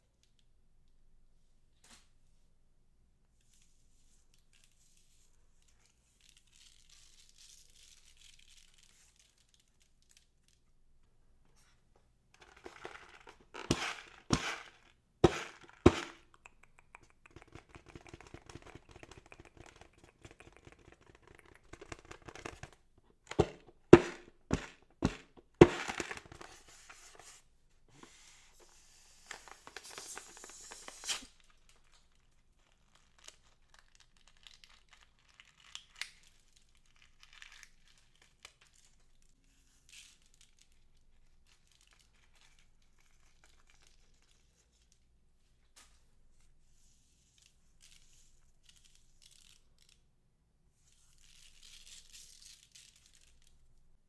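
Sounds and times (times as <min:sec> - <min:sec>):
crinkling and rustling: 0:03.4 - 0:39.2.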